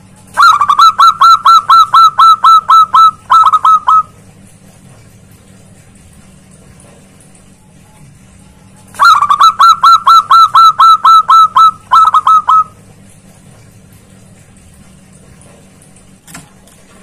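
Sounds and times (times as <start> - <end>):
dove calling sharp notes: 0.3 - 4.2, 9.0 - 12.8.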